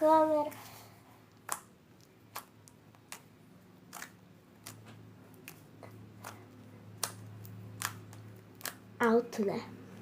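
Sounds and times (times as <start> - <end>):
slime clicking and popping: 1.4 - 3.3, 3.9 - 4.8, 6.2 - 8.9.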